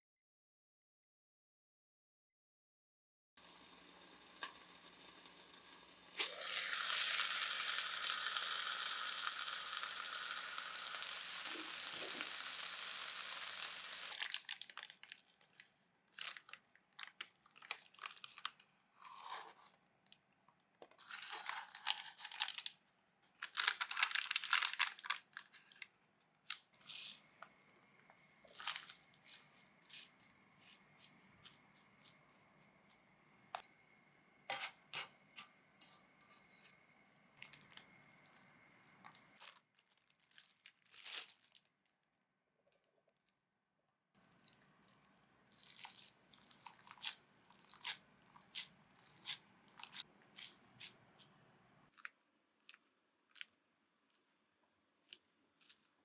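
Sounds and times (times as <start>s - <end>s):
steady hiss: 6.0s - 14.2s
rustling and crinkling: 20.8s - 25.9s, 26.5s - 33.7s, 39.0s - 42.0s, 44.4s - 51.3s.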